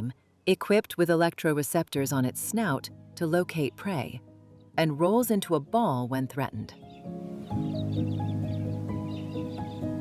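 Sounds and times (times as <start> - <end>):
music of held notes: 6.7 - 10.0.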